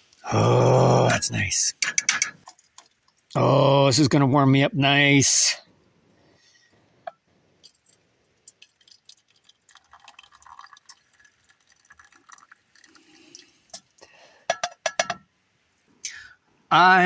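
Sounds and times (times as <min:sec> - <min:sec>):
liquid sounds of hot drink: 0:01.8 - 0:03.7, 0:07.1 - 0:14.8
faint clicks and clinks of cup: 0:14.5 - 0:15.3.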